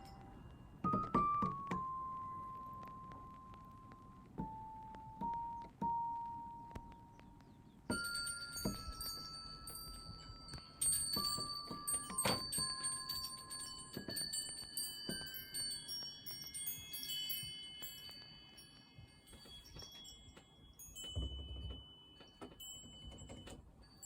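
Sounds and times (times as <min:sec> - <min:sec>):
bell-like chimes ringing: 0:00.0 - 0:02.4, 0:07.9 - 0:24.0
high tinkling strikes: 0:07.9 - 0:24.0.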